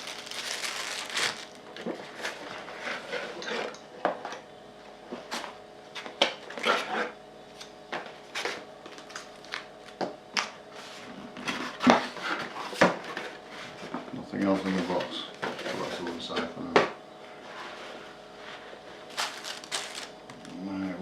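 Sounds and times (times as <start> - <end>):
items handled in cardboard box: 0.0 - 2.6, 19.0 - 20.2.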